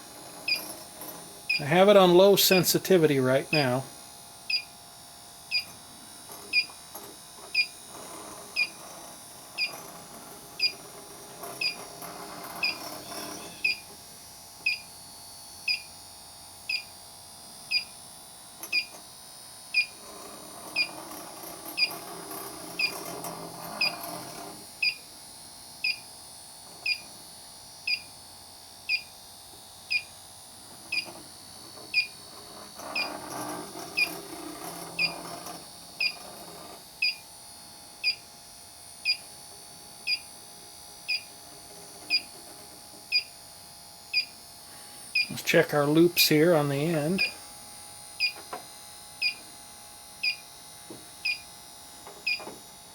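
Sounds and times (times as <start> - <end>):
leak detector beeping: 0.5 - 0.7, 1.5 - 3.8, 4.5 - 4.7, 5.5 - 5.8, 6.5 - 6.8, 7.5 - 7.8, 8.6 - 8.8, 9.6 - 9.8, 10.6 - 10.8, 11.6 - 11.9, 12.6 - 13.9, 14.6 - 14.9, 15.6 - 15.9, 16.7 - 17.0, 17.7 - 17.9, 18.7 - 19.0, 19.7 - 20.0, 20.8 - 21.0, 22.8 - 23.0, 23.8 - 24.0, 25.8 - 26.1, 26.8 - 27.1, 27.9 - 28.1, 28.9 - 29.1, 29.9 - 30.1, 30.9 - 31.1, 31.9 - 32.2, 33.0 - 33.2, 34.0 - 34.2, 35.0 - 35.2, 36.0 - 36.2, 37.0 - 37.3, 38.0 - 38.3, 39.0 - 39.3, 40.0 - 40.3, 41.1 - 41.4, 42.1 - 42.4, 43.1 - 43.3, 44.1 - 44.4, 45.0 - 47.4, 48.2 - 48.4, 49.2 - 49.4, 50.2 - 50.5, 51.2 - 51.5, 52.2 - 52.5.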